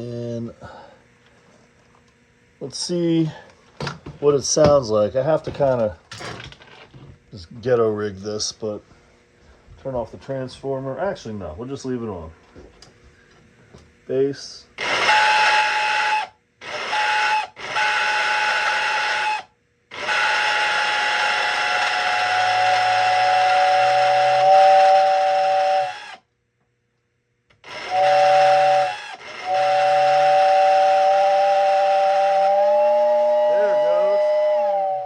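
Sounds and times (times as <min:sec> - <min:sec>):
toy train steam whistle: 0:14.8 - 0:26.2, 0:27.6 - 0:35.0.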